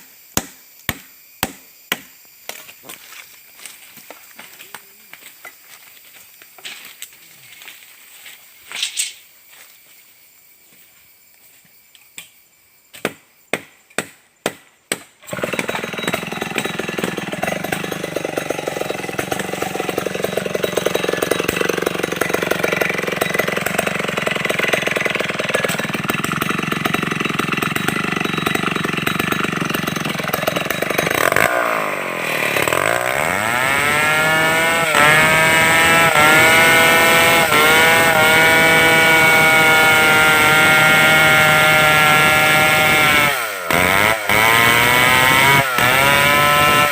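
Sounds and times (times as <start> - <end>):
chainsaw running: 15.2 - 46.9.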